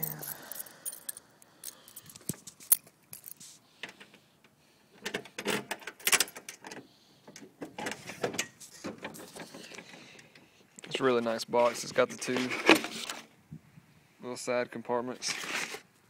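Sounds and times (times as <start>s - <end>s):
keys jangling in a lock: 0.0s - 3.6s, 5.2s - 6.8s.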